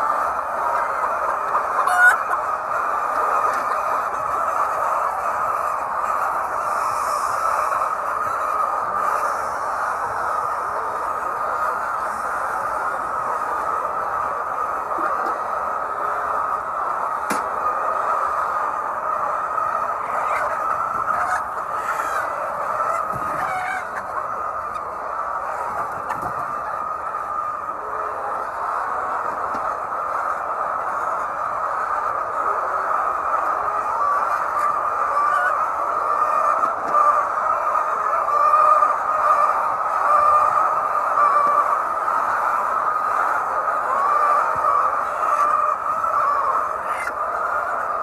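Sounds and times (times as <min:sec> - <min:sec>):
hens clucking: 0:00.0 - 0:48.0.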